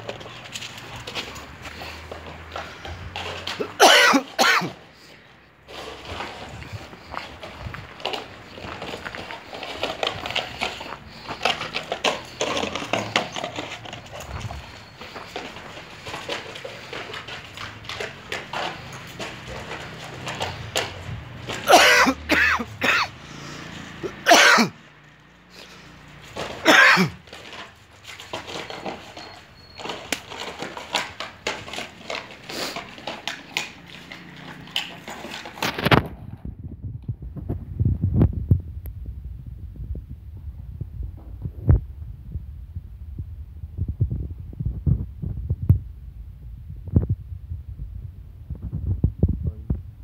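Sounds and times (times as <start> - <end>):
person coughing: 3.6 - 4.8, 21.6 - 23.2, 24.2 - 24.8, 26.6 - 27.2.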